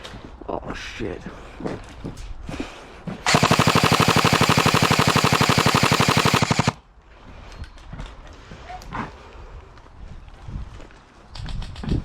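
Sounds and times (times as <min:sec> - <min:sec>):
airsoft rifle full-auto burst: 0:03.3 - 0:06.8.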